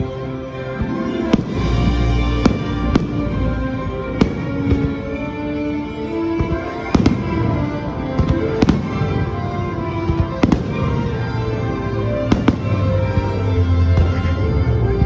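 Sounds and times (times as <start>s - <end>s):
music soundtrack: 0.0s - 15.0s
fireworks bangs: 0.8s - 5.1s, 6.4s - 9.4s, 10.0s - 11.4s, 12.3s - 13.4s.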